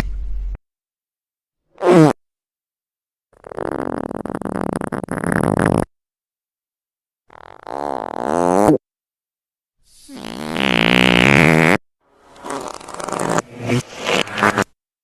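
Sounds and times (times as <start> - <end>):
fart sound effects: 1.8 - 2.2, 3.4 - 5.9, 7.3 - 8.8, 10.0 - 14.8.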